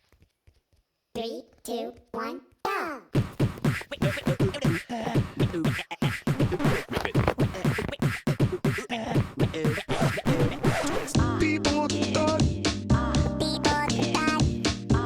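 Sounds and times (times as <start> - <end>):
beatbox-style vocal sounds: 1.2 - 12.4
clicking beat: 3.2 - 11.1.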